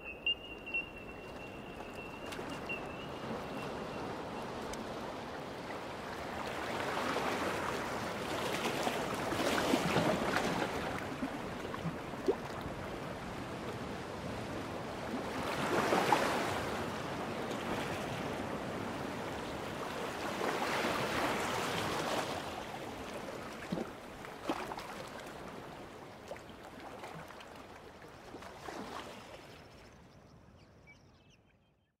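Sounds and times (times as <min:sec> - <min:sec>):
waves breaking: 0:00.0 - 0:29.8.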